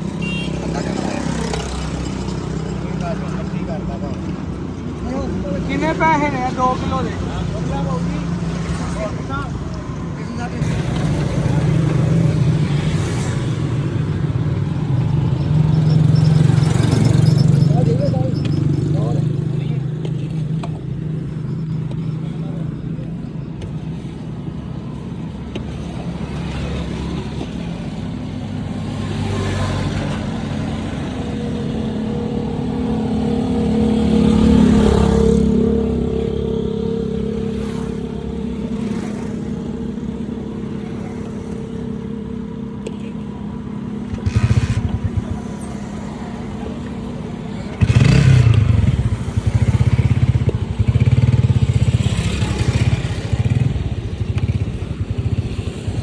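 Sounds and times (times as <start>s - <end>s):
motorcycle engine throbbing: 10.3s - 24.7s, 43.5s - 56.0s
vehicle engine passing: 43.2s - 56.0s.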